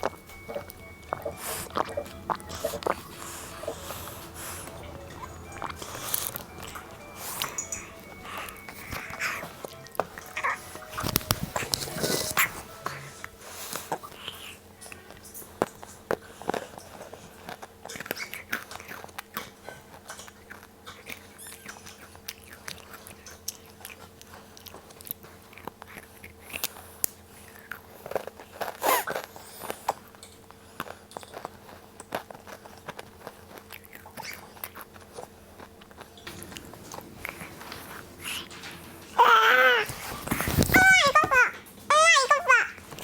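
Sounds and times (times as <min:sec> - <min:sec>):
biscuit sticks crunching: 0:00.0 - 0:15.2.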